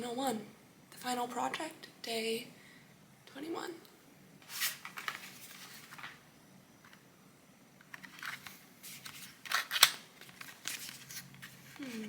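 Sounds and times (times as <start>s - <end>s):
package rustling and clicking: 7.8s - 11.8s.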